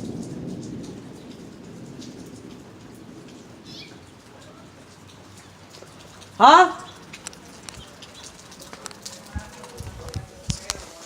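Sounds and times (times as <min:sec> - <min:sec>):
rain falling: 0:00.0 - 0:11.0
thunder rumble: 0:00.0 - 0:11.0
bird chirping: 0:03.6 - 0:04.1.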